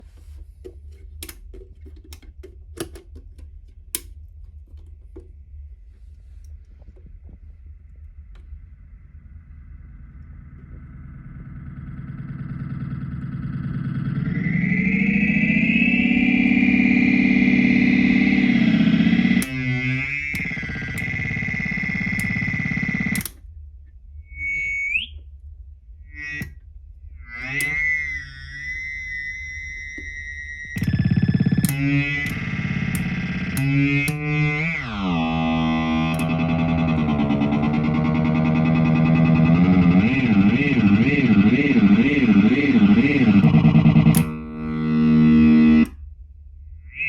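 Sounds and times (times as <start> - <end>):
steady low hum: 3.4 - 47.0
short rising tone: 10.7 - 23.2, 27.4 - 45.9
guitar pedal crackling clicks: 16.9 - 23.4, 30.7 - 45.9.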